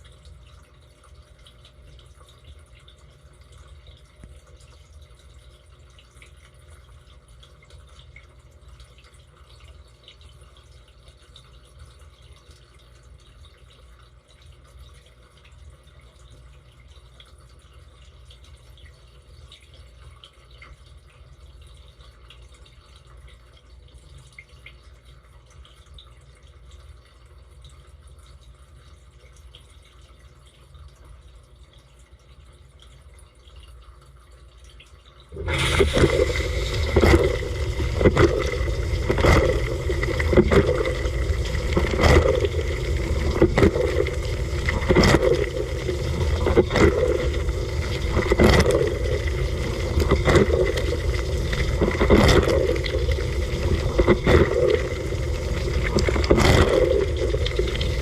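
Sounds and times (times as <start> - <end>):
water spraying and dripping: 34.5 - 58.0
dishwasher pump hum: 35.2 - 58.0.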